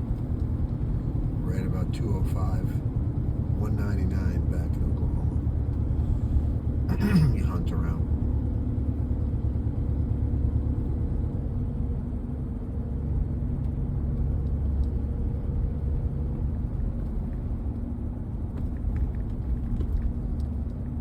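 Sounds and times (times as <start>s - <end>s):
vehicle engine and tyres rumbling: 0.0s - 21.0s.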